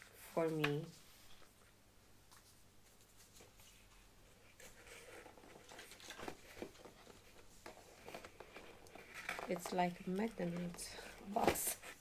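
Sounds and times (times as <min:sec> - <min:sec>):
cardboard packaging rustling: 0:03.0 - 0:12.0.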